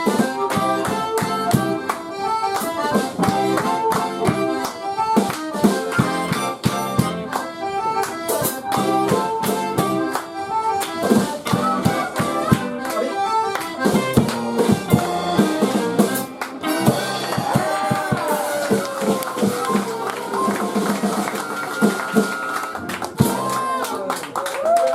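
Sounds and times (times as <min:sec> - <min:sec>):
accordion: 0:00.0 - 0:23.8
harmonica: 0:00.0 - 0:23.8
bass: 0:00.0 - 0:24.1
guitar: 0:00.0 - 0:24.2
drum kit steady beat: 0:02.5 - 0:07.3, 0:10.9 - 0:12.8, 0:13.8 - 0:23.6.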